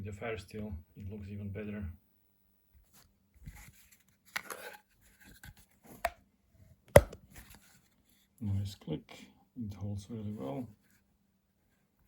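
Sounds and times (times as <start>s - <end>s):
plastic sheath scraping and rustling: 2.9s - 6.2s, 6.9s - 8.2s.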